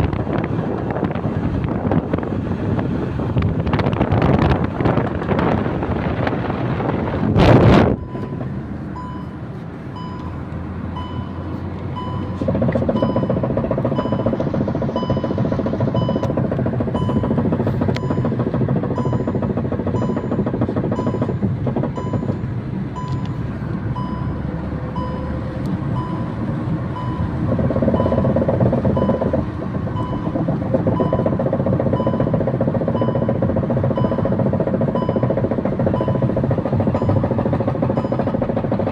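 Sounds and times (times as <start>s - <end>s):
short beeps: 7.9s - 17.4s, 18.0s - 21.4s, 22.0s - 22.4s, 23.0s - 23.4s, 24.0s - 25.4s, 26.0s - 27.3s, 27.9s - 28.3s, 29.0s - 36.3s, 36.9s - 37.3s, 37.9s - 38.4s
wheel hub knocking: 12.0s - 23.1s, 27.0s - 38.9s.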